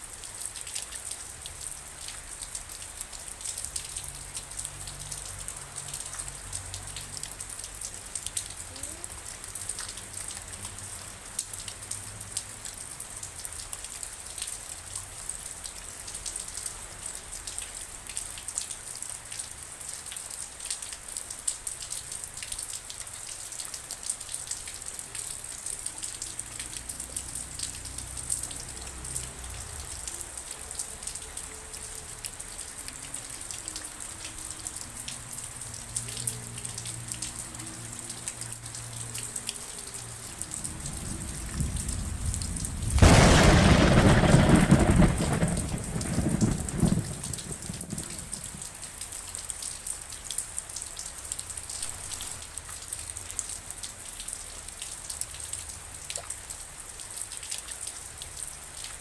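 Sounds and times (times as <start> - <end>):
rain pattering: 0.0 - 59.0
thunderclap rumbling: 40.2 - 48.8.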